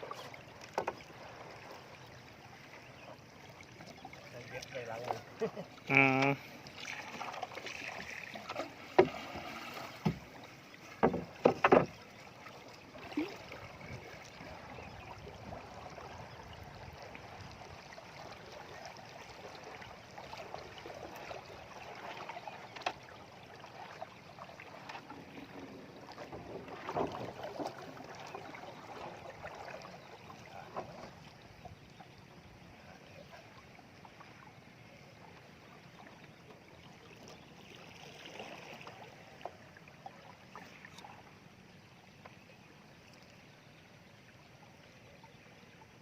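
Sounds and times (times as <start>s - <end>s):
water lapping around hull: 0.0s - 46.0s
knocks against boat: 8.9s - 12.1s.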